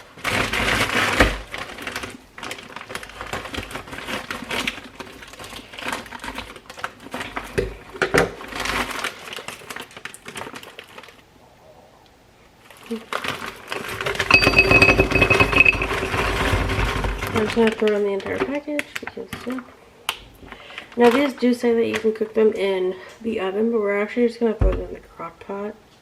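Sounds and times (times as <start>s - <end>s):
frozen meatballs clattering into pot: 13.0s - 19.6s.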